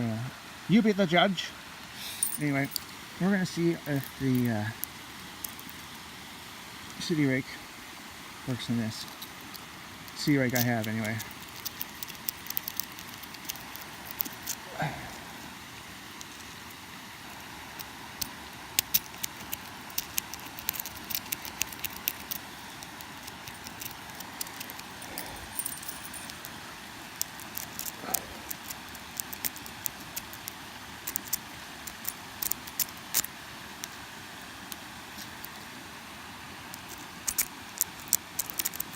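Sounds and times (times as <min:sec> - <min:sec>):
lock pick raking pins: 0:02.1 - 0:02.8, 0:10.1 - 0:14.6, 0:17.8 - 0:26.5, 0:27.2 - 0:30.4.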